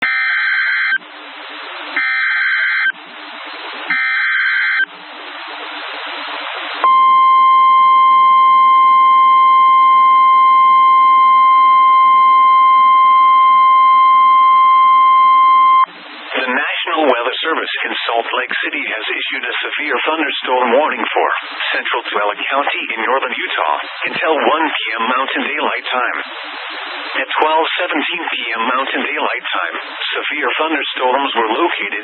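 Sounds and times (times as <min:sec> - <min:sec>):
steady warning alarm tone: 0:00.0 - 0:01.0, 0:02.0 - 0:03.0, 0:03.9 - 0:04.9, 0:06.8 - 0:15.9
radio hiss: 0:15.8 - 0:32.0.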